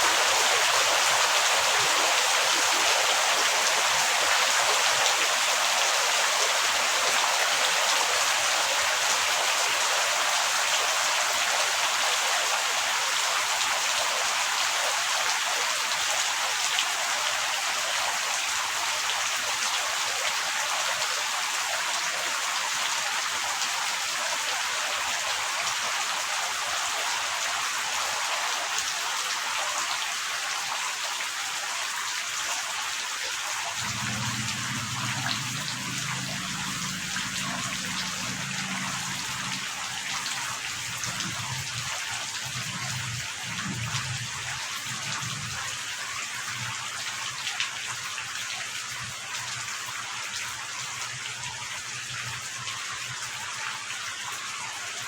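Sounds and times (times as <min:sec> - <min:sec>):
heavy rain falling: 0:00.0 - 0:15.4, 0:33.6 - 0:49.9.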